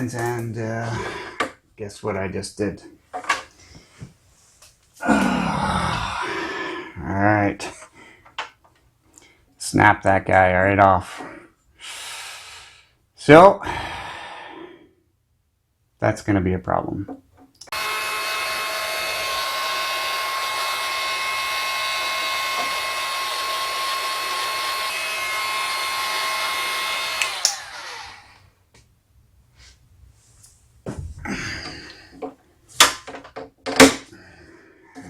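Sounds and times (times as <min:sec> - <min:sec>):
hot-air blower whining: 0:17.7 - 0:28.4.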